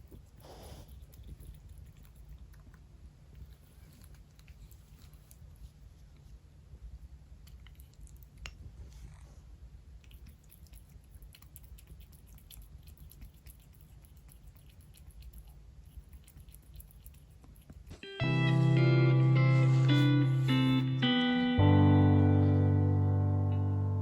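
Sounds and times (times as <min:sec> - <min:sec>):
kitten chewing food: 0:00.0 - 0:18.1
low room hum: 0:00.0 - 0:24.0.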